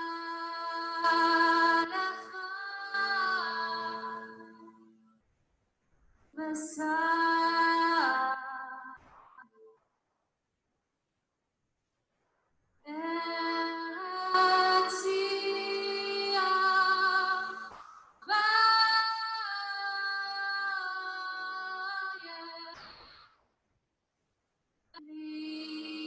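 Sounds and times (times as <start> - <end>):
woman singing slow prayer melody: 0.0 - 4.9, 6.4 - 9.0, 12.9 - 22.8, 25.0 - 26.0.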